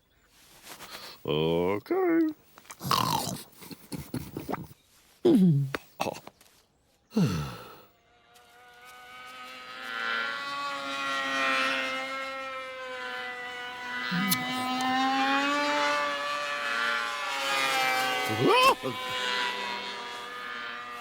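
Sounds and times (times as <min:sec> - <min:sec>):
buzzing drone: 0:07.2 - 0:21.0.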